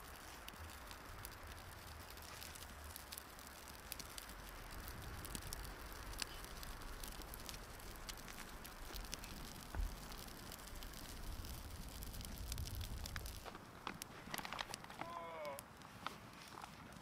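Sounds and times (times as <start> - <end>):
faint steady hiss: 0.0 - 17.0
light ticks and crackles: 0.0 - 17.0
wind buffeting microphone: 4.0 - 13.4.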